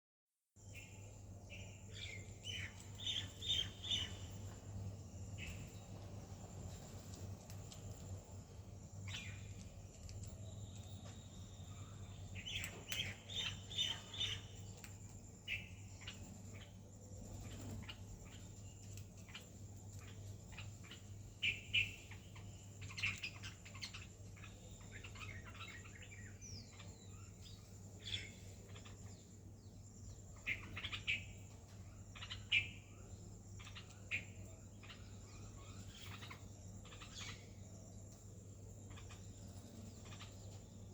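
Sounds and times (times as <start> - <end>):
steady low hum: 0.6 - 40.9
parrot chirping: 34.8 - 37.5, 38.9 - 39.2, 40.0 - 40.3.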